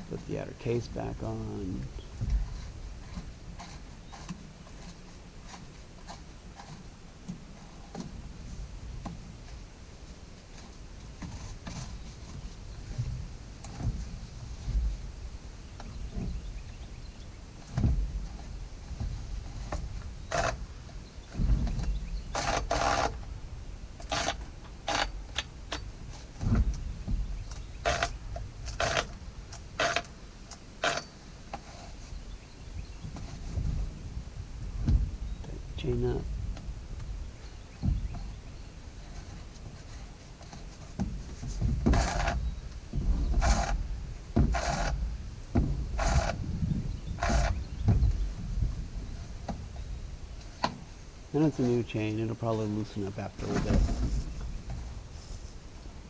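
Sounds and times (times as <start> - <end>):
scraping rattles of parts: 17.7 - 23.3, 24.0 - 30.1, 39.0 - 49.4, 50.4 - 56.0
saw chain rasping along bar: 22.4 - 23.2, 24.0 - 25.1, 27.8 - 29.1, 29.8 - 30.1, 30.8 - 31.1, 41.9 - 42.4, 43.4 - 43.8, 44.5 - 45.0, 46.0 - 46.4
low handling noise: 40.8 - 56.0.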